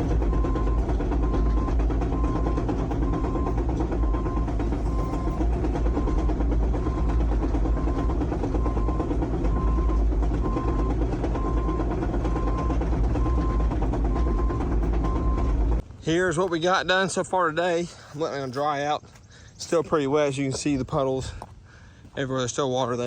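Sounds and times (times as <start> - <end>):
warning beeper: 0.0 - 15.6
diesel engine running: 0.0 - 18.4.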